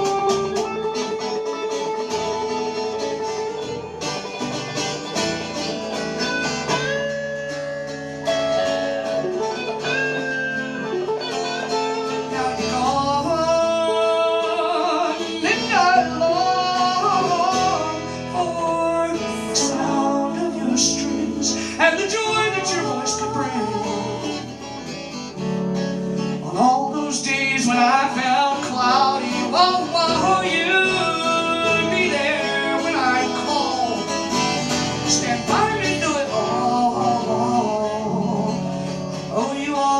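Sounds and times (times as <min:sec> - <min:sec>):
sliding melody line: 0:00.0 - 0:24.8
guitar playing chords: 0:00.0 - 0:39.9.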